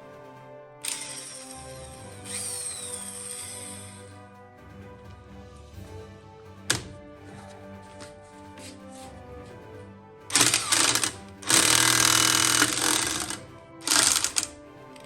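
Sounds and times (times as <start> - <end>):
background music: 0.0 - 15.0
pneumatic impact wrench hammering: 0.8 - 4.0, 10.3 - 14.6.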